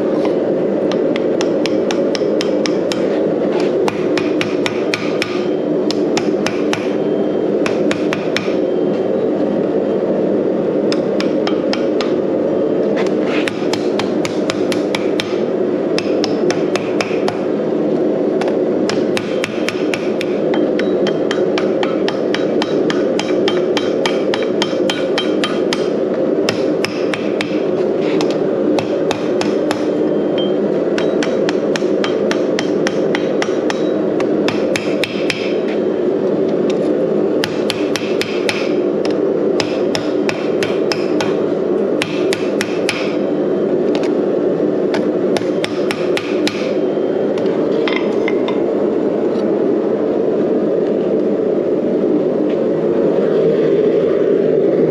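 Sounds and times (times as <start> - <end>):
hammer striking steel on anvil: 0.9 - 3.1, 3.8 - 7.0, 7.6 - 8.6, 10.9 - 12.2, 16.0 - 17.4, 18.4 - 35.6, 37.4 - 41.4, 42.0 - 43.2, 44.9 - 46.8.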